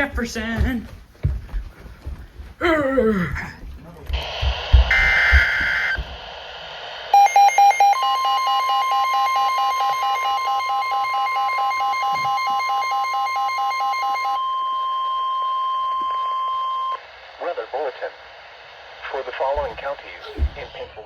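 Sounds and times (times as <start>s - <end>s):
steady warning alarm tone: 4.2s - 6.3s, 7.0s - 17.0s
pulsing electronic beeper: 4.7s - 6.0s, 7.1s - 17.0s.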